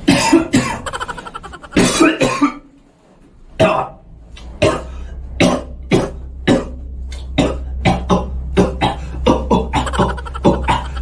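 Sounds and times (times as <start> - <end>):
person coughing rhythmically: 0.0 - 2.6, 7.4 - 11.0
low hum: 3.4 - 11.0.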